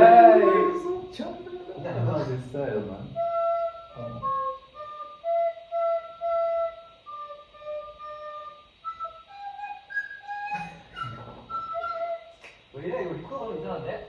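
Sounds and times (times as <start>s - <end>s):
recorder playing a melody: 0.0s - 1.8s, 3.2s - 12.5s.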